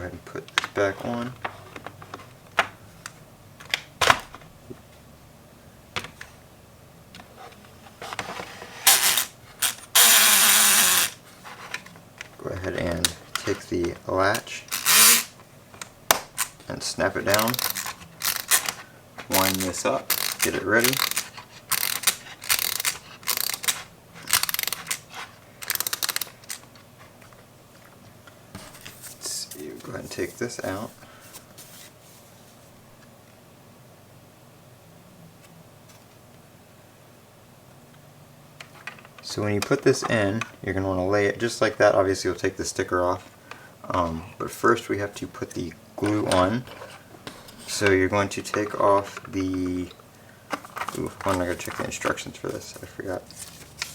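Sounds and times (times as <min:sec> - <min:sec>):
hard plastic parts clicking: 0:08.0 - 0:26.8, 0:47.7 - 0:52.9
ratcheting winder clicking: 0:17.4 - 0:18.7, 0:19.3 - 0:25.0, 0:25.6 - 0:26.6.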